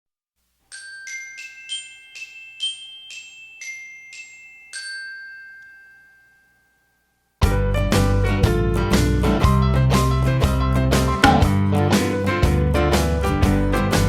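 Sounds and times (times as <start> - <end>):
bell-like chime melody: 0.7 - 7.3.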